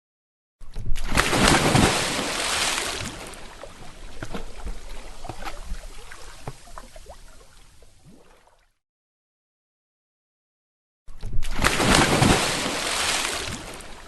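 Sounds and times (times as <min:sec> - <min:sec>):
large splash into water: 0:01.0 - 0:07.3, 0:11.5 - 0:14.0
water sloshing: 0:01.0 - 0:08.7, 0:11.6 - 0:14.0.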